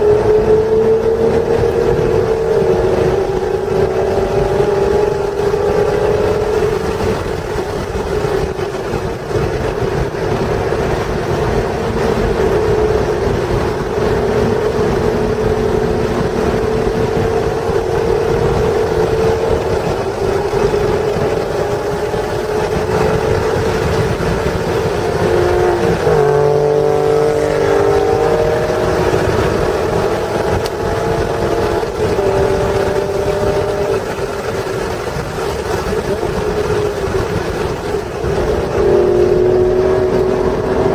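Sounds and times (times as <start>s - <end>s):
car engine accelerating: 0.0s - 40.9s
gear change: 0.0s - 40.9s
road and wind rumble: 0.0s - 40.9s.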